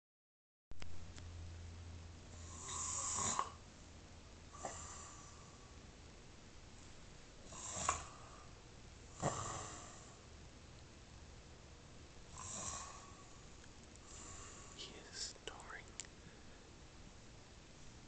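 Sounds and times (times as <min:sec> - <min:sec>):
person snoring: 0:02.4 - 0:03.6, 0:04.5 - 0:05.6, 0:07.4 - 0:08.5, 0:09.2 - 0:10.2, 0:12.3 - 0:13.4, 0:14.0 - 0:15.2
sharp snorts: 0:02.4 - 0:03.6, 0:04.6 - 0:05.4, 0:07.5 - 0:08.5, 0:09.2 - 0:10.2, 0:12.4 - 0:13.2.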